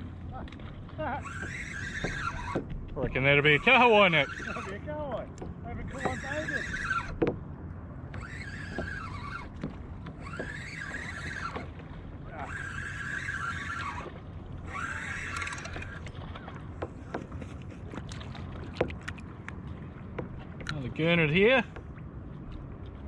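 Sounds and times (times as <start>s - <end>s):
fishing reel whirring: 1.2s - 2.6s, 3.2s - 5.2s, 5.8s - 7.2s, 8.1s - 16.1s
light clicks and knocks: 5.2s - 6.2s.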